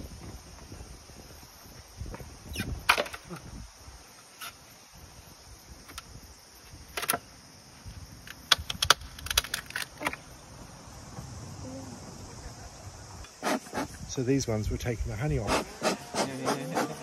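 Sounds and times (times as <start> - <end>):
beehive equipment clicking: 8.2 - 10.2.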